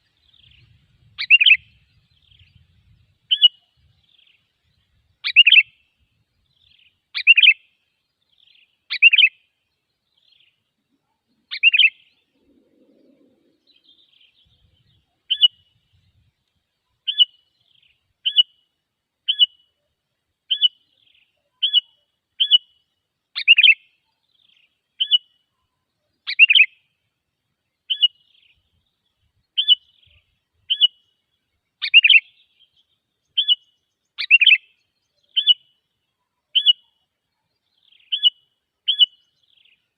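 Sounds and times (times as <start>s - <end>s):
bird downward-sweeping calls: 37.9s - 39.6s.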